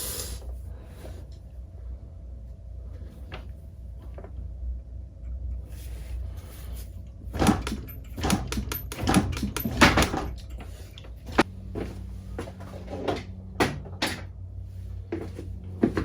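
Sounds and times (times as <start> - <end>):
wheel knocking and clunking: 7.3 - 14.4, 15.1 - 16.0.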